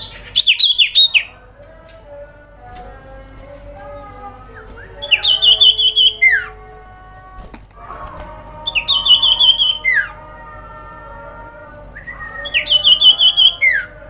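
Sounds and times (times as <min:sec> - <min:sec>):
bird calling with trilled notes: 0:00.0 - 0:01.3
soft drawn-out birdsong: 0:00.0 - 0:06.8, 0:08.2 - 0:14.0.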